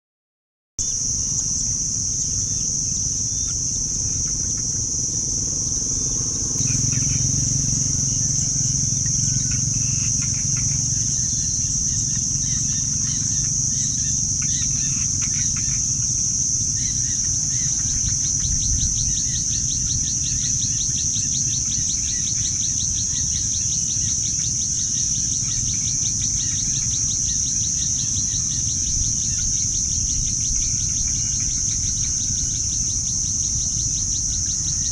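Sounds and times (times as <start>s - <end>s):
insects droning shrill: 0.8s - 34.9s
low outdoor rumble: 4.5s - 18.9s
bird chirps: 6.5s - 15.7s
fast pulsing trill: 6.6s - 13.9s.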